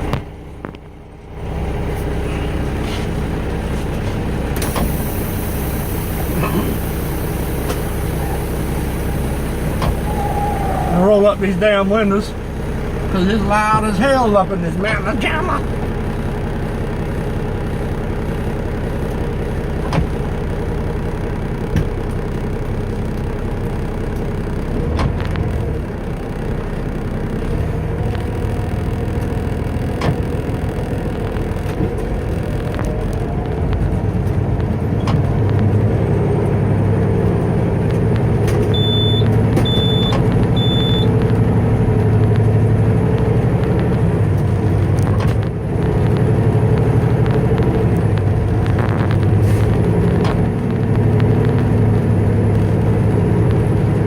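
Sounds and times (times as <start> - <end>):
truck diesel engine driving: 0.0 - 54.0
short high beeps: 38.8 - 41.1.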